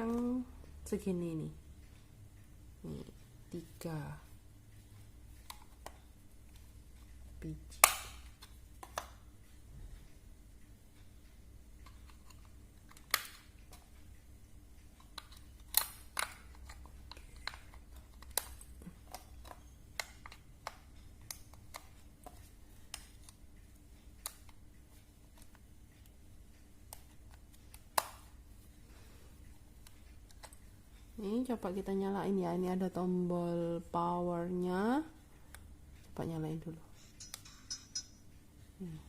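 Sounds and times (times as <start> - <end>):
plastic parts clicking: 15.0 - 23.4.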